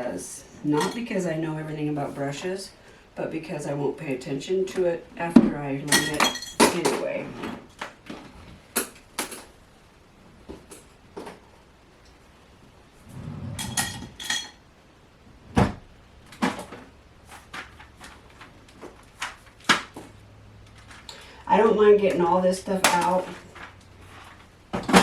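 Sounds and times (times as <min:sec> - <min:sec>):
rustling and shuffling: 0:15.1 - 0:25.0
clicks and knocks of objects: 0:22.8 - 0:23.9.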